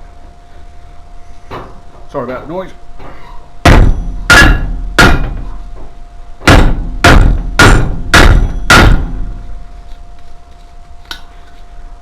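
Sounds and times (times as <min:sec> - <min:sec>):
hammer striking metal: 0:03.7 - 0:05.5, 0:06.4 - 0:09.3.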